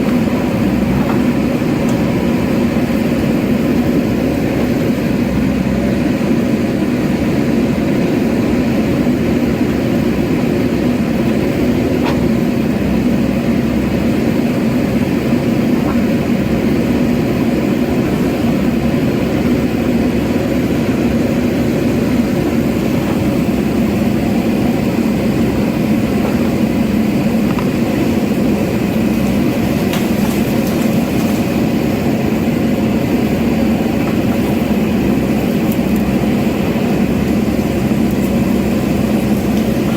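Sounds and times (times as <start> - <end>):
engine humming: 0.0 - 39.9.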